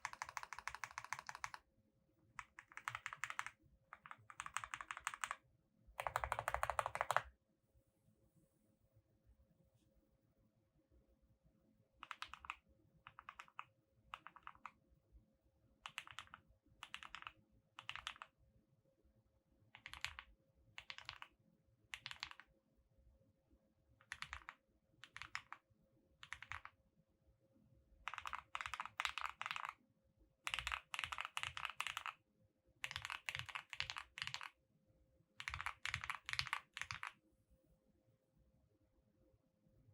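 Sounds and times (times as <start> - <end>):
mechanical keyboard typing: 0.0 - 1.6, 2.4 - 5.4, 6.0 - 7.3, 12.0 - 14.7, 15.8 - 18.3, 19.8 - 21.3, 21.9 - 22.5, 24.0 - 25.6, 26.2 - 26.7, 28.0 - 29.8, 30.4 - 32.2, 32.8 - 34.6, 35.4 - 37.2.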